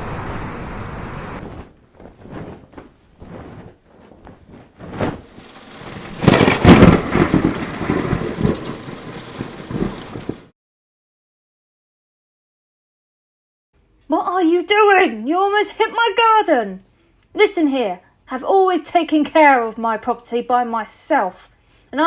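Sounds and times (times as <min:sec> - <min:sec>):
rain-like noise: 0:00.0 - 0:01.4, 0:05.2 - 0:10.5
short rumbles: 0:04.9 - 0:10.5
loud rolling thunderclap: 0:05.1 - 0:10.5.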